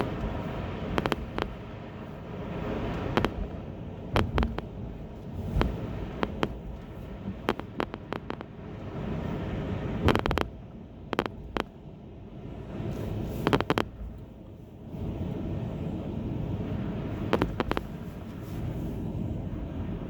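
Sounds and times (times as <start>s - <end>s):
tyre and road noise: 0.0s - 20.0s
sharp ticks and clicks: 1.0s - 1.6s, 3.0s - 3.6s, 4.2s - 4.7s, 5.6s - 8.5s, 10.1s - 10.5s, 11.2s - 11.7s, 13.5s - 14.0s, 17.3s - 17.9s.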